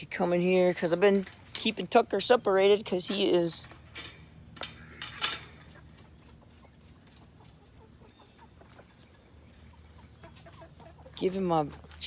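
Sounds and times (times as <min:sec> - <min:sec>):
chickens clucking softly: 0:05.6 - 0:11.2.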